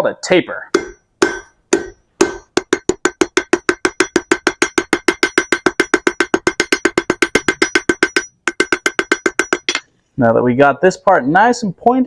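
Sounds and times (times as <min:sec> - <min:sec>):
hammer striking steel on anvil: 0:00.7 - 0:09.9.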